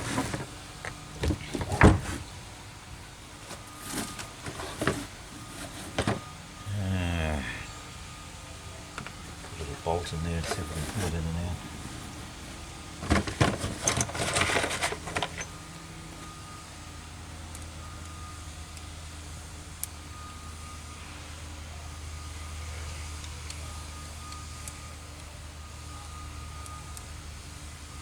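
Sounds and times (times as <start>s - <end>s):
steady low hum: 0.0s - 17.0s
metallic clicking and clatter: 13.0s - 15.6s.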